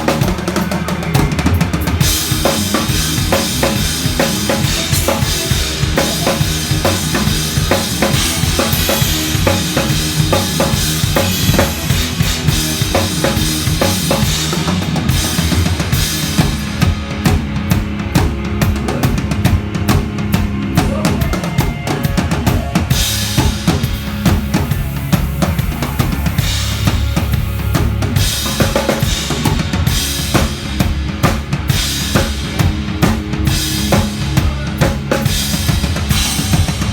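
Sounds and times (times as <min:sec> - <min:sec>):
cymbals: 0:33.5 - 0:36.9.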